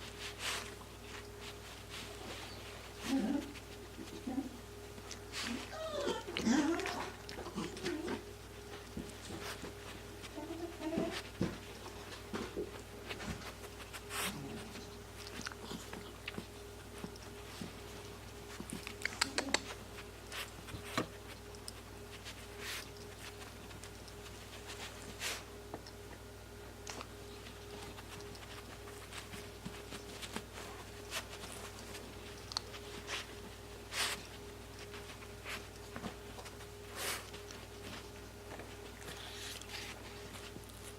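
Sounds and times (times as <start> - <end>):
dog sniffing: 0.0 - 4.4, 13.1 - 25.6, 27.6 - 36.0, 36.6 - 38.2, 38.8 - 40.9
faint steady hum: 0.0 - 40.9.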